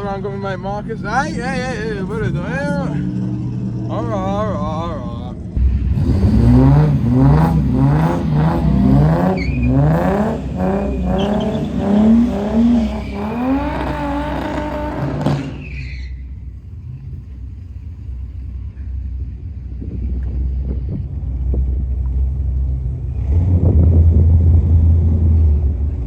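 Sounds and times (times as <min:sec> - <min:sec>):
car engine revving: 0:00.0 - 0:18.7
low engine rumble: 0:00.0 - 0:26.0.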